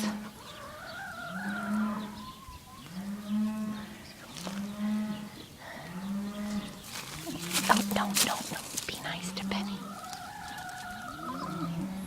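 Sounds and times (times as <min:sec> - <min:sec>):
cattle mooing: 0:02.9 - 0:07.4, 0:10.0 - 0:12.0.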